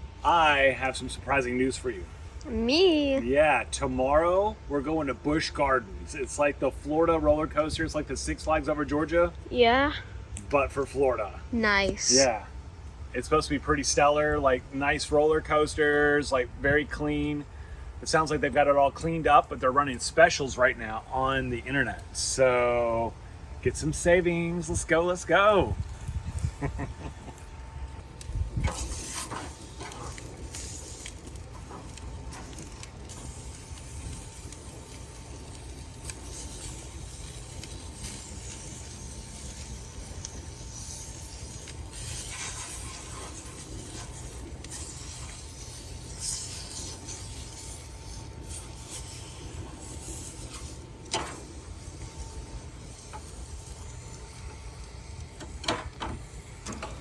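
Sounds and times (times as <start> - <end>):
food sizzling: 10.8 - 12.5, 18.0 - 57.0.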